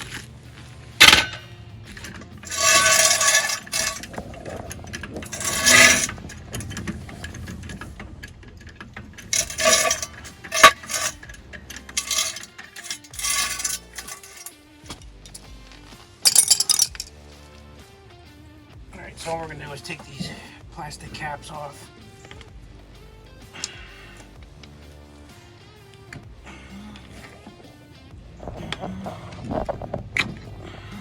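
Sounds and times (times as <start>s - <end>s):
hand tools clinking on metal: 1.0s - 15.6s, 16.2s - 17.1s.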